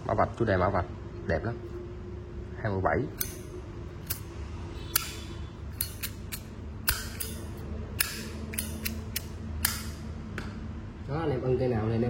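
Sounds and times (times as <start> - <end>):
lighter metallic clicks: 3.2 - 4.3, 4.9 - 10.0.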